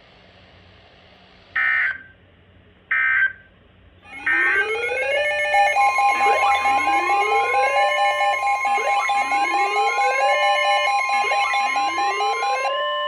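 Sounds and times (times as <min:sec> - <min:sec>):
electronic alert tone with sweeps: 0:04.1 - 0:12.7
screeching data tone bursts: 0:04.1 - 0:12.7.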